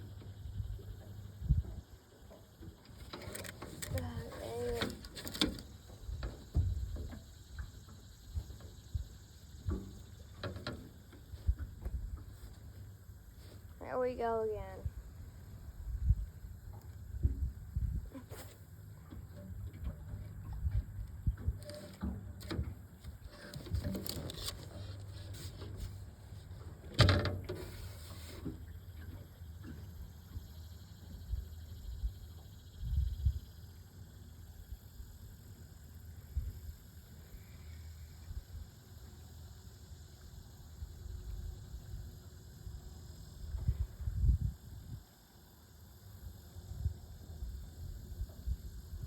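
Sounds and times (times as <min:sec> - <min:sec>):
small clicks and knocks: 0:02.6 - 0:07.7.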